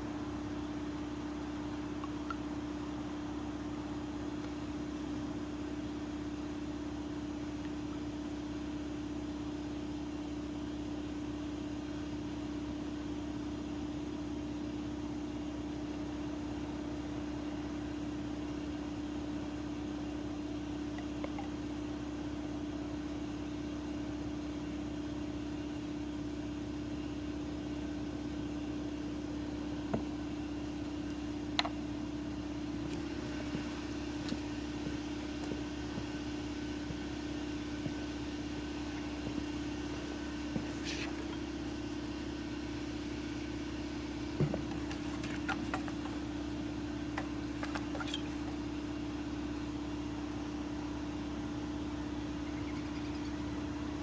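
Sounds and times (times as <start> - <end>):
mechanical hum: 0.0 - 54.0.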